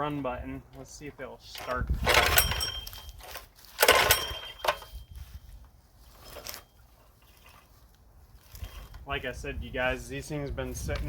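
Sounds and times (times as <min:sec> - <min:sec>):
recoil rope pulls on small engine: 0:01.5 - 0:05.4, 0:06.0 - 0:09.2.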